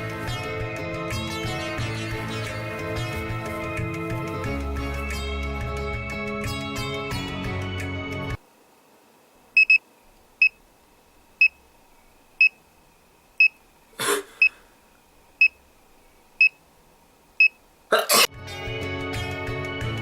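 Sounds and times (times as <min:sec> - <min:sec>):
background music: 0:00.0 - 0:08.4, 0:18.3 - 0:20.0.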